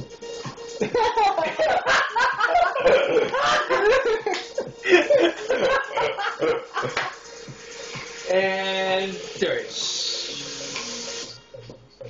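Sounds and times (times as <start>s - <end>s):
people laughing: 0.8s - 7.1s.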